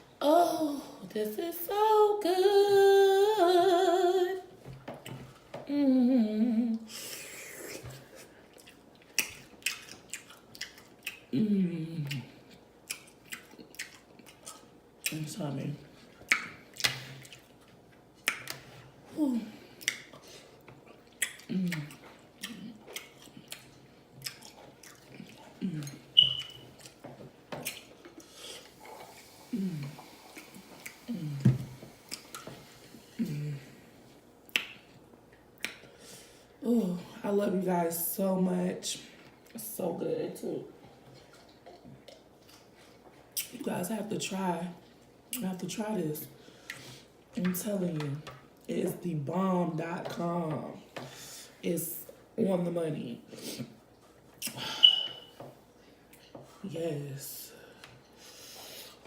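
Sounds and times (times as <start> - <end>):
person humming in enjoyment: 5.7 - 6.9, 29.5 - 30.0, 33.2 - 33.7
woman humming mmm: 5.7 - 7.8, 21.5 - 22.7, 28.8 - 31.6, 33.0 - 33.8
chewing and lip-smacking: 7.7 - 11.3, 12.0 - 15.2, 16.0 - 18.8, 19.8 - 31.1, 34.4 - 35.9, 41.0 - 43.6
wet mouth smacks: 34.5 - 34.8.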